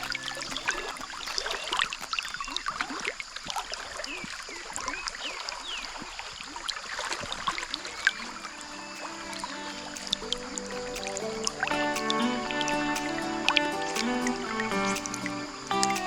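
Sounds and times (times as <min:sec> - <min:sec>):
trickling gurgling water: 0:00.0 - 0:16.0.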